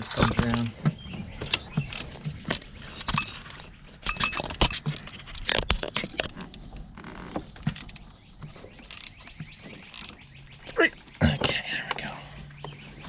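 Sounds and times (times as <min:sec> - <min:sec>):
hand tools clinking on metal: 0:00.0 - 0:00.8.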